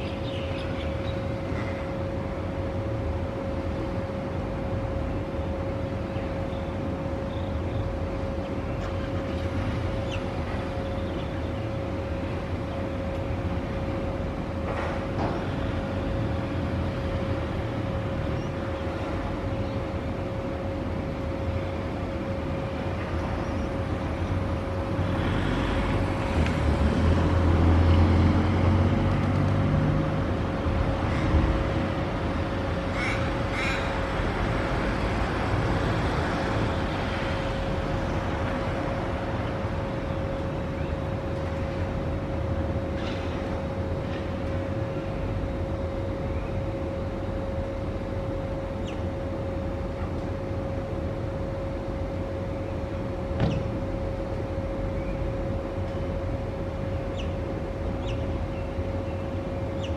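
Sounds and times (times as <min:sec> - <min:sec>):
traffic and engine hum: 0:00.0 - 0:59.9
ravens cawing: 0:32.9 - 0:34.1.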